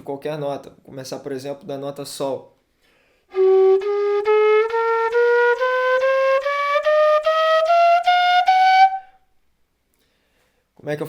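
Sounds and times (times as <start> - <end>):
flute playing ascending scale: 3.3 - 9.2.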